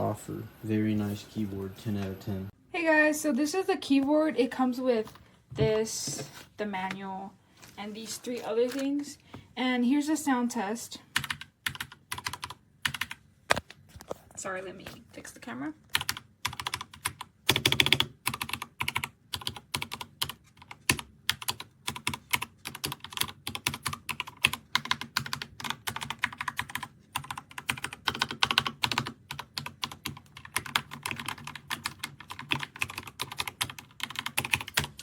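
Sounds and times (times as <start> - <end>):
mechanical keyboard typing: 11.1 - 13.6, 15.9 - 35.0.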